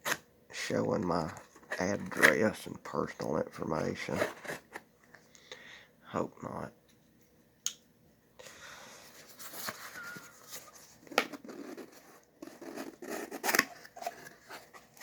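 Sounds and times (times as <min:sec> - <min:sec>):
packaging tearing and rustling: 0:09.4 - 0:15.0.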